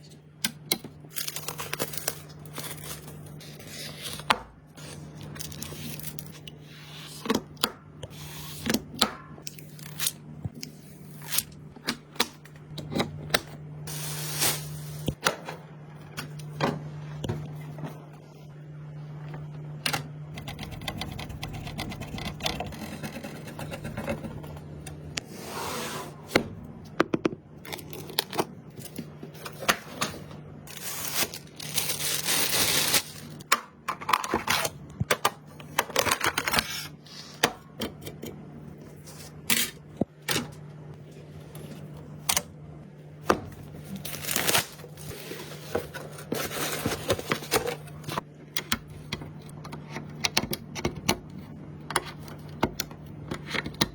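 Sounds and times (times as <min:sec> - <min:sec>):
steady low hum: 0:00.0 - 0:49.6
computer parts clicking and tapping: 0:19.8 - 0:25.1, 0:48.5 - 0:53.9.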